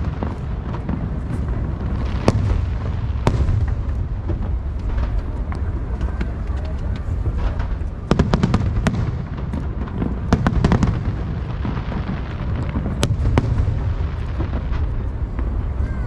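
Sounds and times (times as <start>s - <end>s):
low rumble: 0.0s - 10.4s, 11.0s - 16.0s
firework bangs: 0.0s - 16.0s
fireworks cracking: 0.0s - 16.0s.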